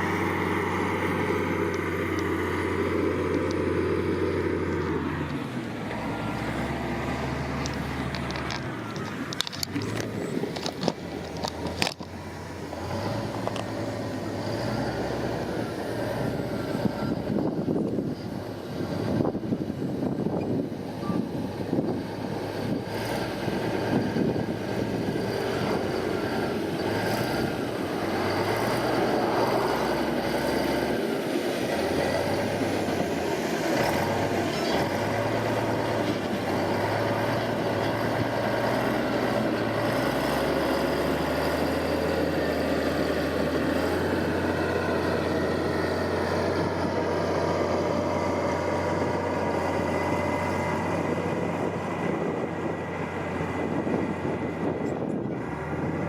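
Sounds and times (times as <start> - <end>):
diesel machinery engine: 0.0 - 56.0.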